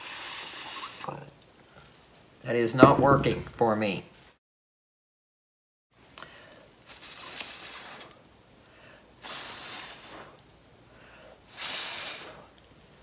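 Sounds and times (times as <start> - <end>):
person blowing puffs of breath: 6.2 - 8.1, 8.7 - 12.6.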